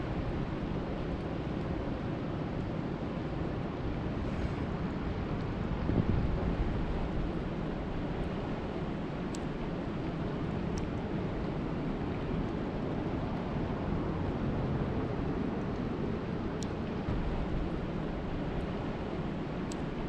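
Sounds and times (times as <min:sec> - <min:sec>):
wind buffeting microphone: 0:03.7 - 0:09.0, 0:09.7 - 0:20.0
faint ticks: 0:19.7 - 0:19.9.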